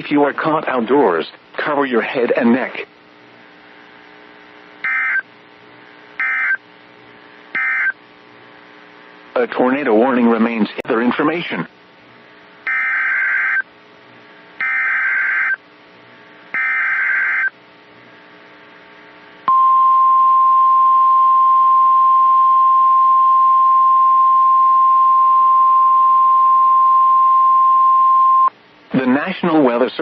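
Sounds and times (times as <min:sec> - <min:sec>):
buzzy digital data bursts: 0:04.8 - 0:05.3, 0:06.2 - 0:06.6, 0:07.5 - 0:08.0, 0:12.6 - 0:13.7, 0:14.6 - 0:15.6, 0:16.5 - 0:17.6
steady warning alarm tone: 0:04.8 - 0:05.3, 0:06.2 - 0:06.6, 0:07.5 - 0:08.0, 0:12.6 - 0:13.7, 0:14.6 - 0:15.6, 0:16.5 - 0:17.6.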